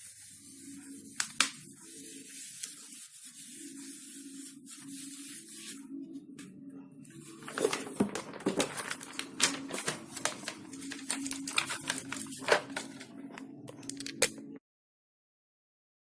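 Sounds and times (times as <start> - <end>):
crinkly material being handled: 7.1 - 14.2.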